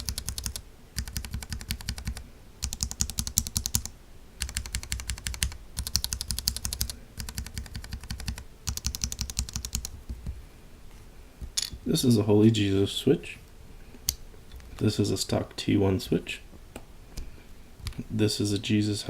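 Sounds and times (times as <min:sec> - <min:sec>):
fast mechanical keyboard typing: 0:00.0 - 0:10.0.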